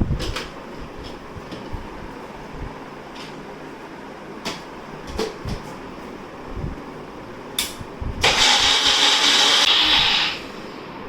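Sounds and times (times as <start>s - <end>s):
electric blender running: 8.2s - 10.6s.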